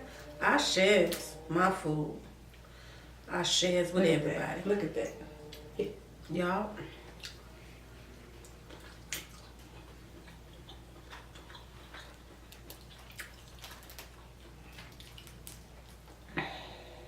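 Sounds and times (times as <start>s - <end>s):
low steady hum: 0.0s - 17.0s
seafood eaten by hand: 8.3s - 16.6s.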